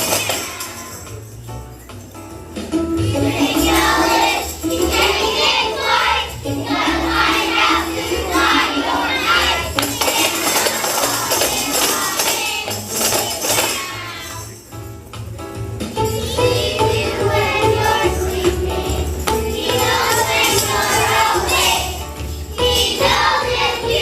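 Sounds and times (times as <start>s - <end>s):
tambourines shaking: 0.0s - 24.0s
upbeat holiday song: 0.0s - 24.0s
voices singing: 3.0s - 14.6s, 16.0s - 24.0s.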